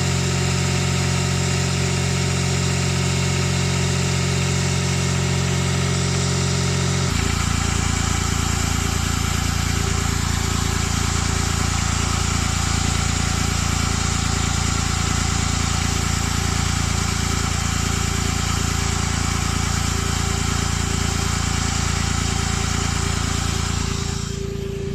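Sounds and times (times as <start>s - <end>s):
car engine idling with knock: 7.0s - 24.9s.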